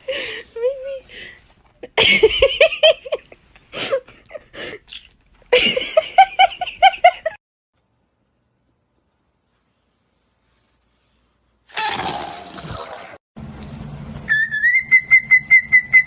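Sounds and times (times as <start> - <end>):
person laughing: 5.5 - 7.4.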